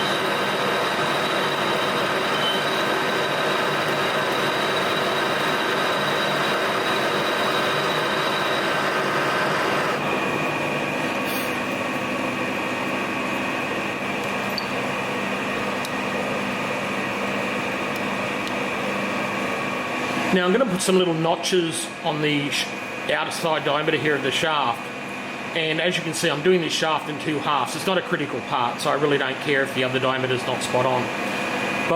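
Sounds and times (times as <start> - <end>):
metal lathe running: 0.0 - 20.5.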